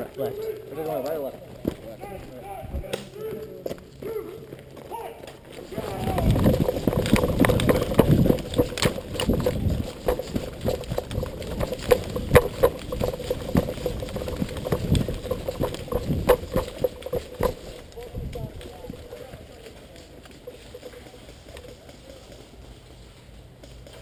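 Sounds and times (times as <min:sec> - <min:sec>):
gear rattling against camera: 0:00.0 - 0:24.0
low rumbling: 0:05.6 - 0:19.2.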